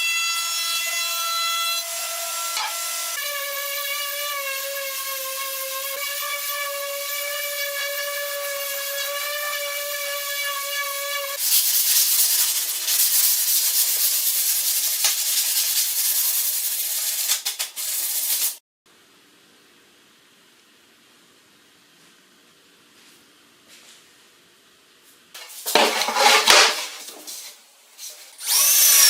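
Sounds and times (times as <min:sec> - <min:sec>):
power tool whining: 0:28.4 - 0:29.0.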